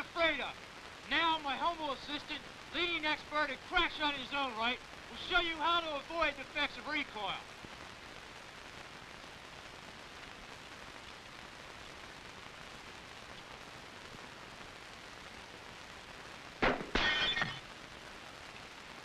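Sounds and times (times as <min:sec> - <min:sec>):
film soundtrack hiss: 0:00.0 - 0:19.0
rifle shot: 0:16.6 - 0:17.6.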